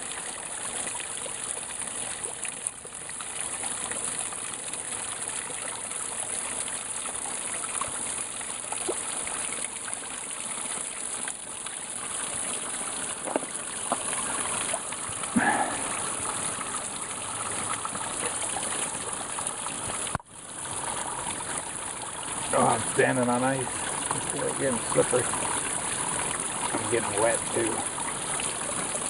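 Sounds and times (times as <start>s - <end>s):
waterfall splashing: 13.1s - 20.2s, 22.4s - 27.9s.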